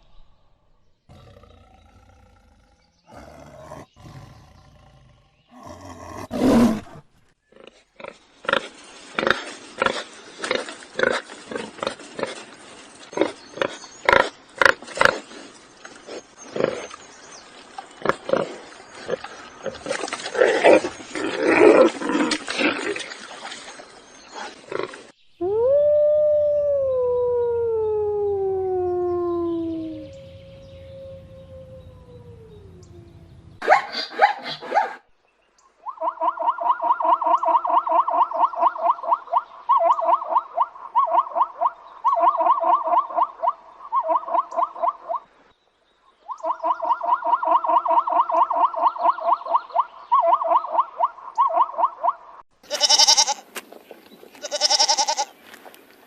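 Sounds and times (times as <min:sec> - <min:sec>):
long howl falling in pitch: 0:25.4 - 0:33.6
animal calls: 0:35.8 - 0:45.2, 0:46.3 - 0:53.4, 0:54.4 - 0:55.3.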